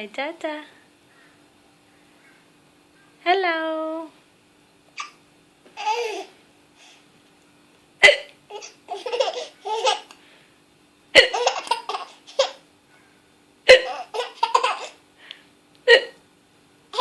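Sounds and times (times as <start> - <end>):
baby laughing: 5.0 - 5.2, 5.8 - 6.3, 8.0 - 10.1, 11.2 - 12.6, 13.7 - 15.0
baby hiccups: 8.0 - 8.4, 11.2 - 11.8, 13.7 - 14.3, 15.9 - 16.2.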